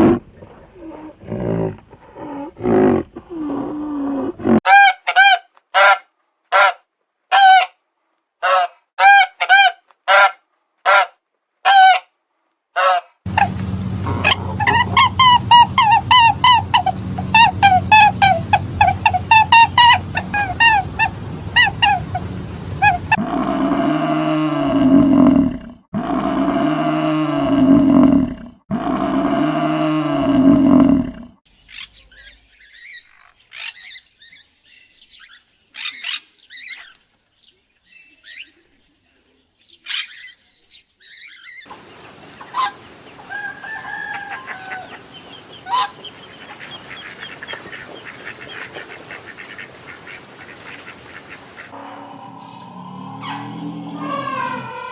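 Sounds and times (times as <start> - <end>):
soft bird calls: 13.3 - 23.2, 31.5 - 54.9
rooster crowing: 41.7 - 46.0.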